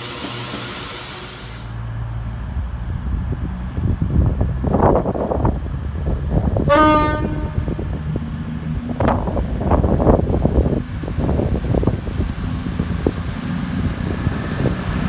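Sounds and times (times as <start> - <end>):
train rumble and clatter: 0.0 - 15.0
train horn blast: 6.6 - 8.1.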